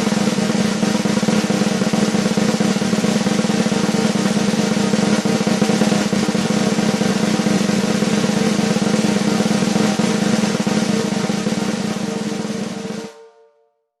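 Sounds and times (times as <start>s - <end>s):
drum roll: 0.0s - 13.2s
drum ringing: 0.0s - 13.4s.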